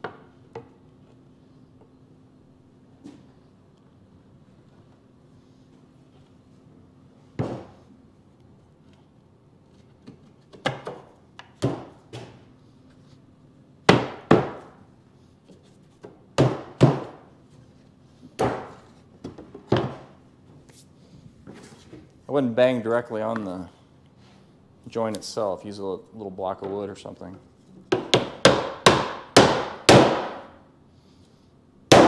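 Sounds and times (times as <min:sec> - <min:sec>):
hammer knocking on wood: 0:27.9 - 0:30.4.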